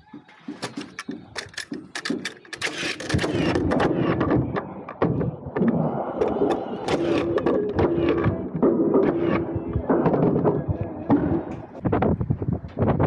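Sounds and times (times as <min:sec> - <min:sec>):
construction clatter: 0:00.0 - 0:11.8.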